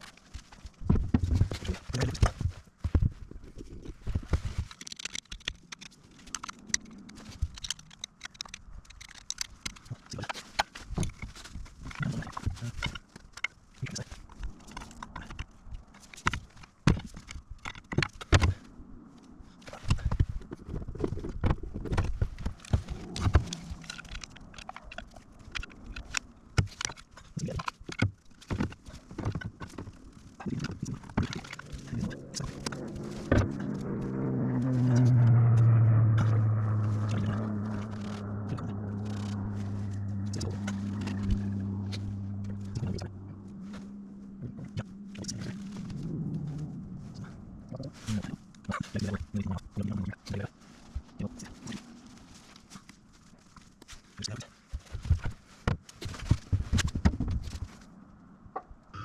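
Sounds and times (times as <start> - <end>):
low mechanical hum: 31.5 - 55.5.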